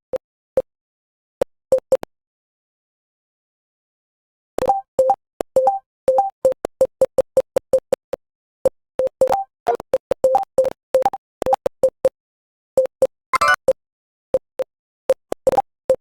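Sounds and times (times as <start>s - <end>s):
electronic keystroke beeps: 4.6s - 7.9s, 9.0s - 12.0s, 12.8s - 13.8s.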